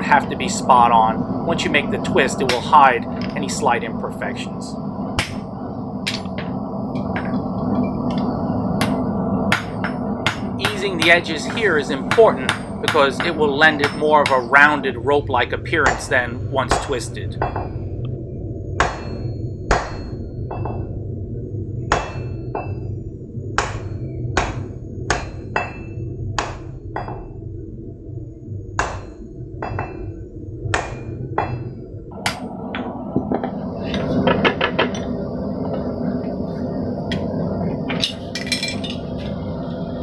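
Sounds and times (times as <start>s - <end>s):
steady rushing noise: 0.0s - 40.0s
hammer striking steel on anvil: 5.2s - 5.4s, 8.8s - 14.8s, 15.8s - 17.7s, 18.8s - 20.8s, 21.9s - 22.8s, 23.6s - 27.3s, 28.8s - 30.0s, 30.7s - 32.5s
metal clinks: 38.0s - 39.0s.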